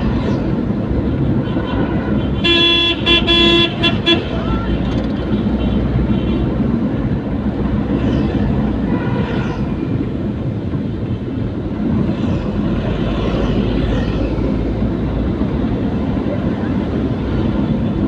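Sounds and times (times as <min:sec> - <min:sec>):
engine and road noise rumble: 0:00.0 - 0:18.0.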